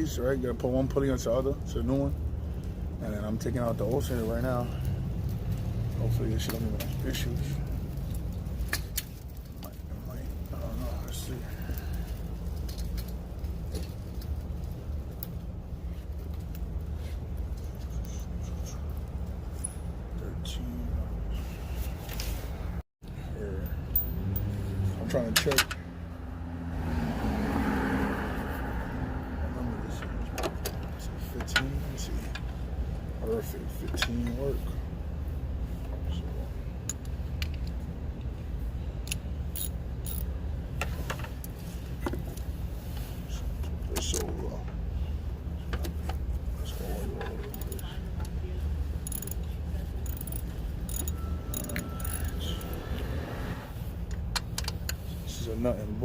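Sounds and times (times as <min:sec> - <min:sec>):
low engine rumble: 0:00.0 - 0:56.0
hand tools clicking: 0:49.0 - 0:52.7.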